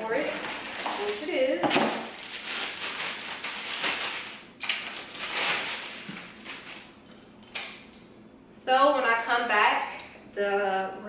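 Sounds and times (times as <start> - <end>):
packaging rustling and crinkling: 0.1 - 7.0.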